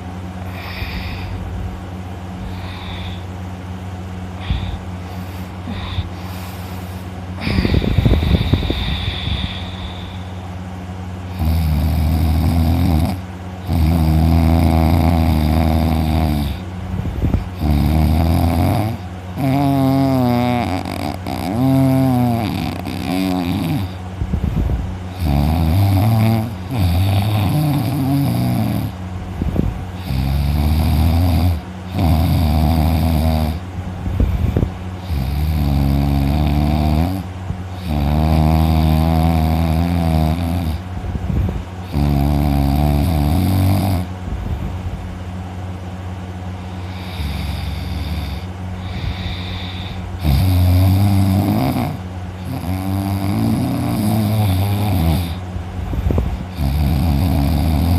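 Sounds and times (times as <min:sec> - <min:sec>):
person snoring loudly: 0:00.4 - 0:01.4, 0:02.4 - 0:03.3, 0:04.4 - 0:10.4, 0:11.3 - 0:16.6, 0:17.3 - 0:24.0, 0:25.1 - 0:29.0, 0:30.0 - 0:33.6, 0:35.0 - 0:40.9, 0:41.8 - 0:44.1, 0:46.7 - 0:55.4, 0:56.4 - 0:57.9.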